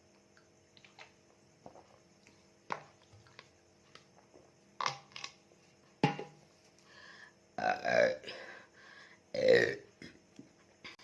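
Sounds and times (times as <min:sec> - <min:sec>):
plastic bottle knocks and clicks: 0:06.0 - 0:06.4.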